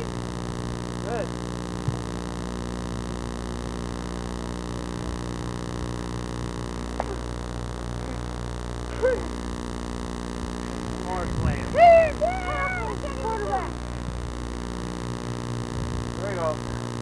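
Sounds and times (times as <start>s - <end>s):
steady low hum and hiss: 0.0s - 17.0s
faint voice calling: 8.9s - 9.4s, 10.8s - 13.9s.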